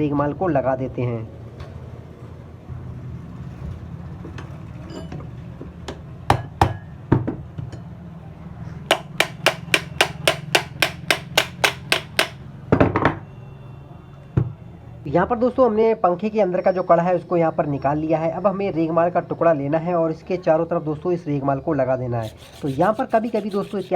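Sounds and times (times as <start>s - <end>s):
hammer blows on metal: 8.9s - 12.4s, 22.2s - 23.9s.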